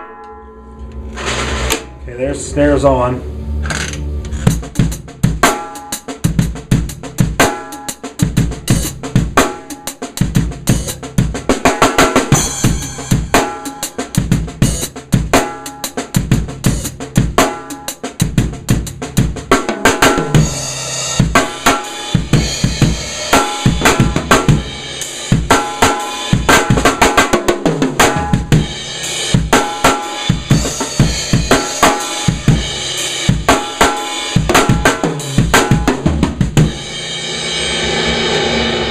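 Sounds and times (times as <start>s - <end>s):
bass drum: 1.1s - 15.5s, 16.1s - 17.6s, 18.2s - 37.1s
high-pitched snare drum: 4.4s - 16.1s, 19.5s - 37.7s.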